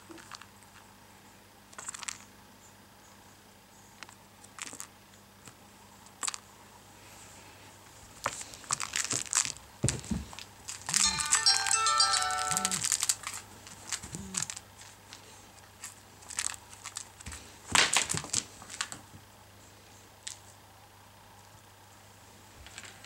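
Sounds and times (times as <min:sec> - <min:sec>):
crinkling and crackling rustles: 0:07.8 - 0:11.0, 0:12.4 - 0:19.3, 0:22.5 - 0:23.0
bright plinking tune: 0:11.0 - 0:12.9.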